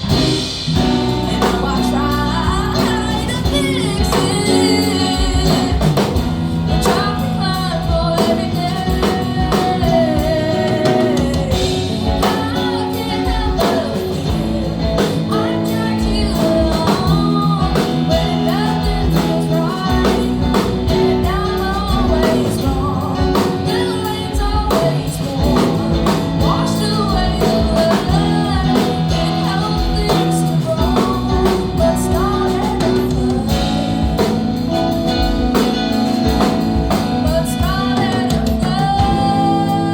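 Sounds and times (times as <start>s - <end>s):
guitar: 0.0s - 39.9s
person singing: 0.0s - 39.9s
steady drum beat: 0.0s - 39.9s.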